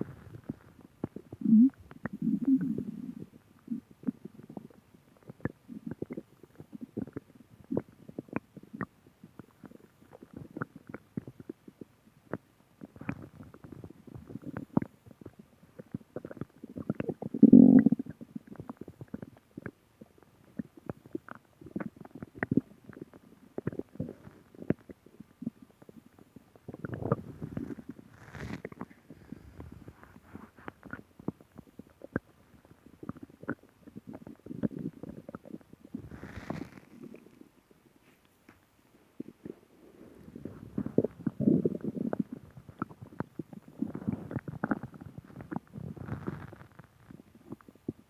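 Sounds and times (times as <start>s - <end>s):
stomach gurgling and rumbling: 0.0s - 48.0s.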